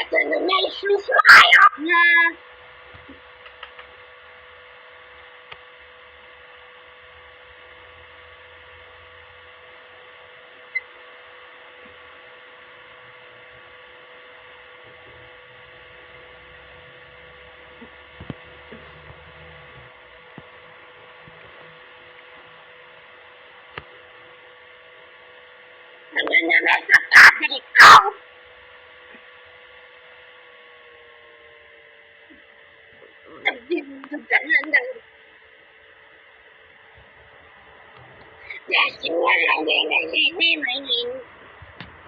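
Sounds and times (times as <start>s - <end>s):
electrical hum: 0.0s - 42.0s
faint clicks: 3.4s - 3.9s.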